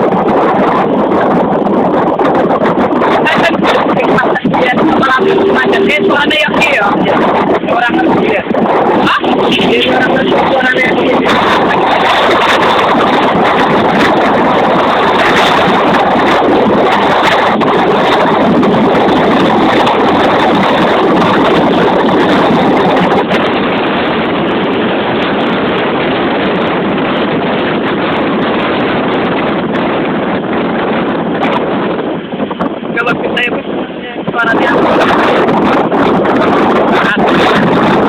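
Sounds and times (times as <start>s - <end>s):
vehicle road and engine noise: 0.0s - 38.0s
wind rush on microphone: 0.0s - 38.0s.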